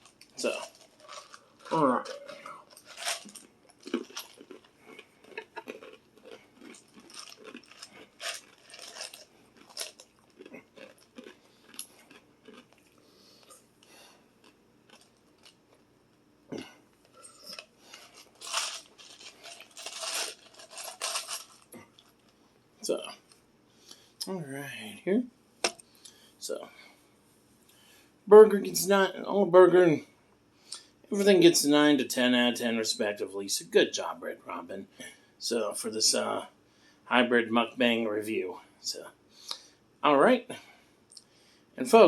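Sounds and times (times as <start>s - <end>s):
chewing and crunching: 0.0s - 15.9s, 16.6s - 22.4s.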